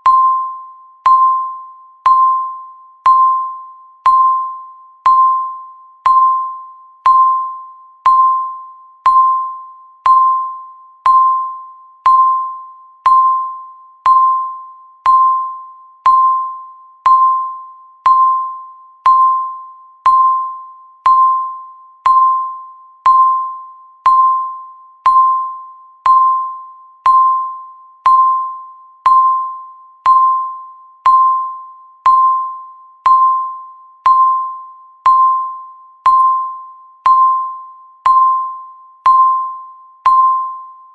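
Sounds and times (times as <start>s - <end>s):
timer pinging tone: 0.0s - 40.9s.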